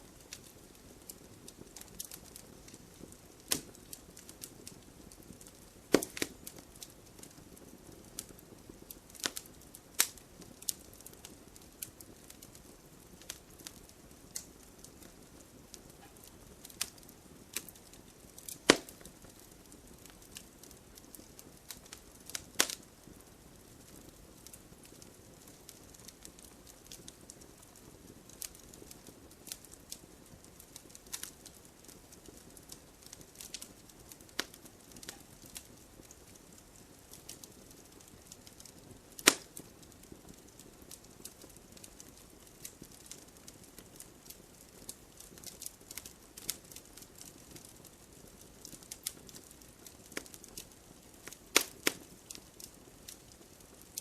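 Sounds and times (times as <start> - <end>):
fire low steady hiss: 0.0 - 54.0
wood crackling and popping: 0.0 - 54.0.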